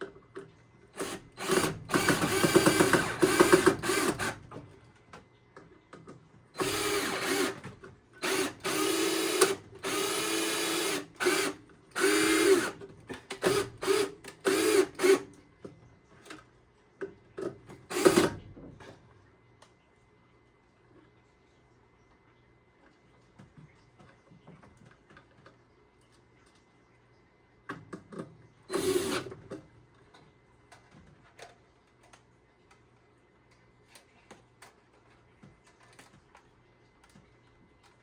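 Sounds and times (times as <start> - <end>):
power drill driving screws: 1.0 - 4.4, 6.6 - 12.8, 13.4 - 15.3, 17.9 - 18.3, 28.7 - 29.3.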